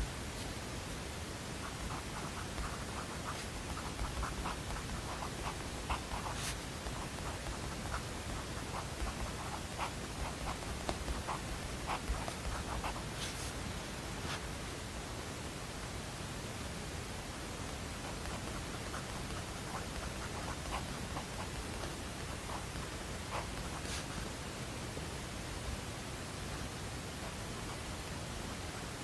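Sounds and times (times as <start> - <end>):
white-noise hiss: 0.0 - 29.0
pencil writing on paper: 1.6 - 13.6, 18.0 - 24.3.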